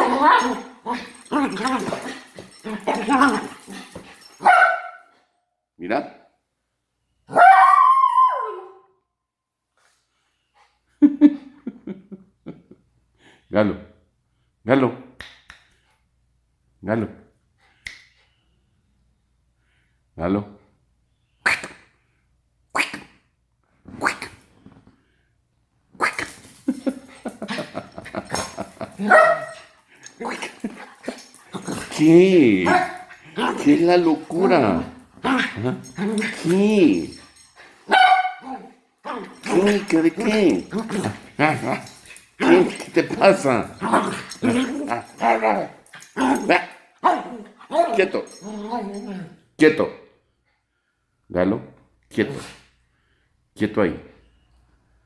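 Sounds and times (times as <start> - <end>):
dog barking and yipping: 0.0 - 5.2, 7.3 - 8.7, 26.0 - 49.3
dog howling: 7.3 - 8.9.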